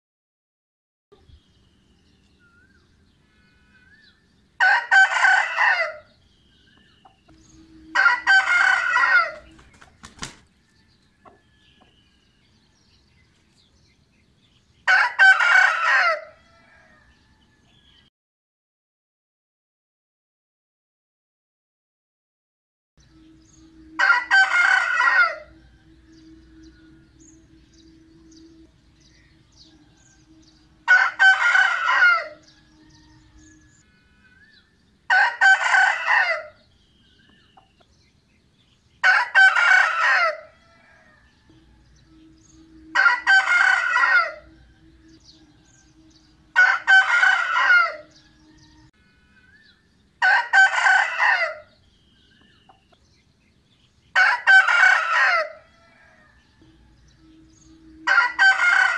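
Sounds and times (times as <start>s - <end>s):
rooster crowing: 3.2s - 6.2s, 7.4s - 9.6s, 10.6s - 13.0s, 14.8s - 18.0s, 23.1s - 36.7s, 39.0s - 51.8s, 54.1s - 58.9s.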